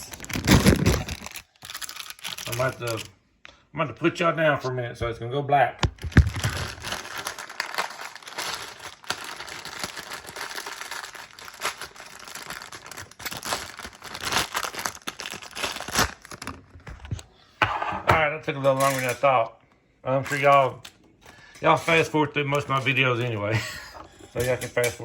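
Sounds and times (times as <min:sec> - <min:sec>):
packaging crinkling and tearing: 0:00.0 - 0:03.1, 0:05.8 - 0:17.2.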